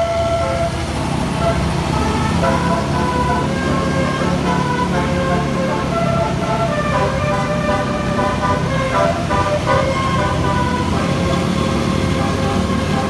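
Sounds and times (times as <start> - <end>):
bus engine running: 0.0 - 13.0
multi-tone bus horn tune: 0.0 - 13.0.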